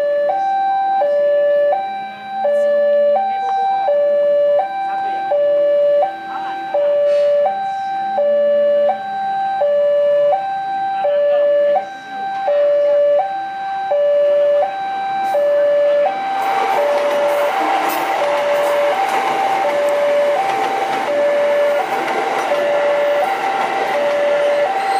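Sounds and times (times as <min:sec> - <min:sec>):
two-tone level crossing alarm: 0:00.0 - 0:24.9
train rushing rumble: 0:16.2 - 0:24.9.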